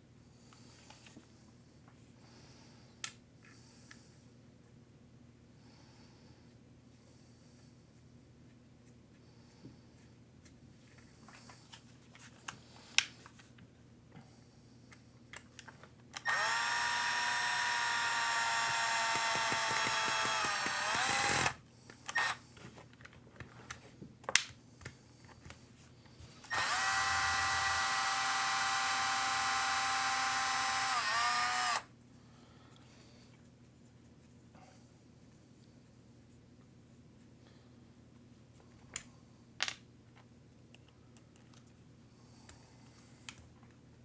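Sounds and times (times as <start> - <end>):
cordless power driver whining: 16.2 - 22.4, 26.5 - 31.9
screws and parts clicking: 16.2 - 22.4.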